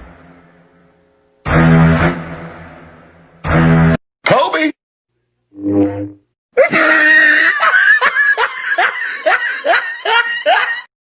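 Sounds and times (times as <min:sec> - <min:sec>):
person laughing loudly: 0:06.6 - 0:10.9.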